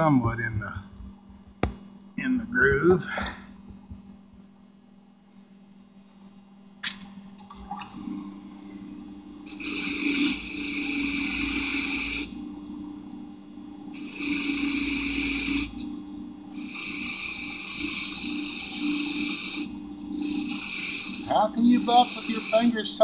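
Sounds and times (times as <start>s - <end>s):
wire wheel motor hum: 7.9s - 23.0s.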